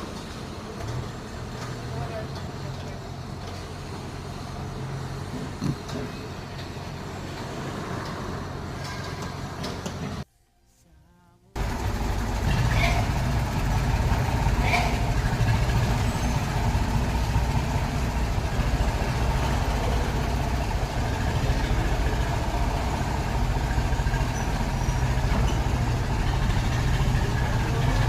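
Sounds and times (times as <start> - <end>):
tractor engine droning: 11.6 - 28.0.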